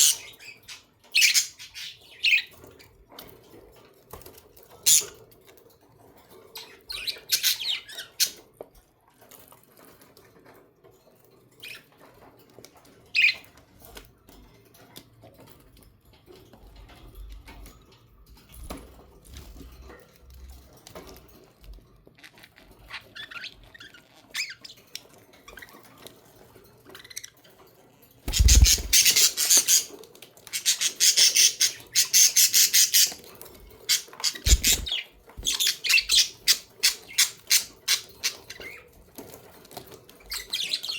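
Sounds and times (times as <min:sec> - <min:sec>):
budgerigars chirping and squawking: 0:00.0 - 0:03.0, 0:04.8 - 0:05.3, 0:06.5 - 0:08.4, 0:13.2 - 0:13.5, 0:28.3 - 0:40.9.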